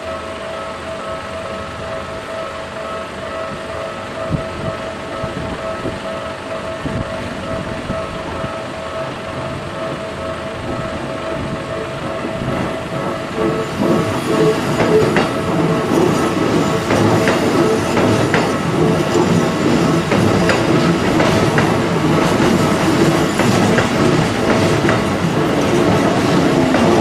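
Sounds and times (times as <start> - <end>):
train wheels clacking over rail joints: 3.7 - 27.0.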